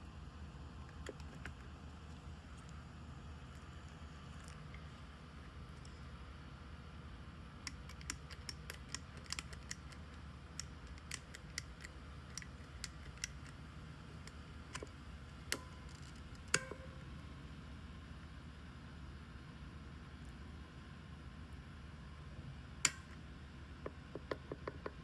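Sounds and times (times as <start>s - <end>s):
small metallic clicks of lock box: 7.7s - 13.6s, 14.2s - 16.8s.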